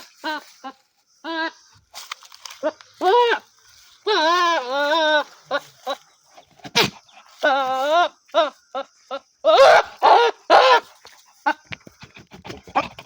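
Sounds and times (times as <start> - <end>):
goat bleating: 3.0 - 6.0.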